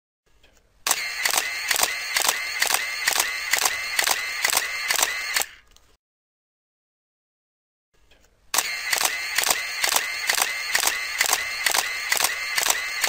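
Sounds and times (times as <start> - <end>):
camera shutter clicking: 0.9 - 5.6, 8.6 - 13.0
steady whir: 0.9 - 5.6, 8.6 - 13.0.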